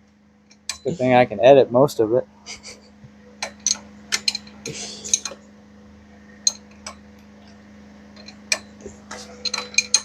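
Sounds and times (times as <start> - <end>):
steady low hum: 0.0 - 10.0
metal hand tools clinking: 9.4 - 10.0.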